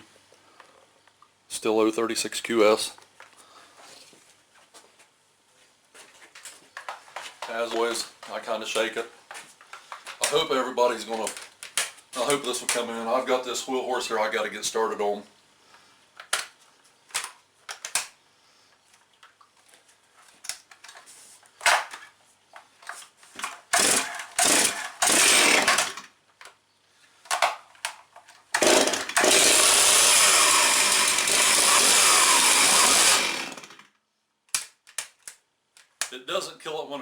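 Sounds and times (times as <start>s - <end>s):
chainsaw engine running: 23.8s - 26.1s, 28.6s - 33.9s.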